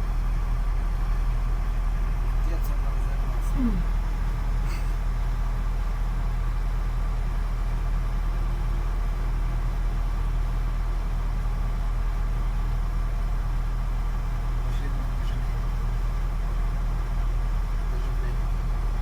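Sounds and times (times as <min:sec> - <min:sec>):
crane engine droning: 0:00.0 - 0:10.8.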